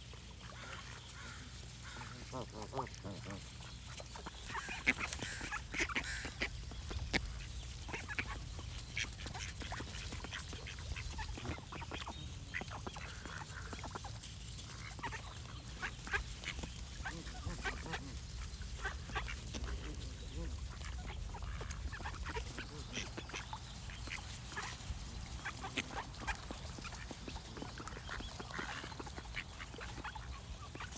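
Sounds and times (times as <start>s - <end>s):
ducks quacking: 0.0s - 30.9s
steady low rumble: 15.3s - 28.2s.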